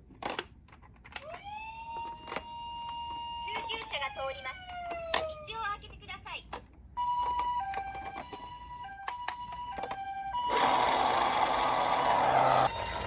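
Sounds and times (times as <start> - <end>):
two-tone ambulance siren: 1.2 - 5.6, 7.0 - 13.0.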